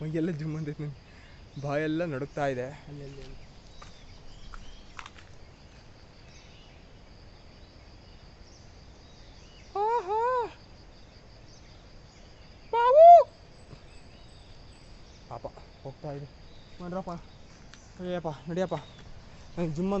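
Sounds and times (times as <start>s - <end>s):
high-pitched insect drone: 4.1s - 20.0s
rising-and-falling calls: 12.7s - 14.6s.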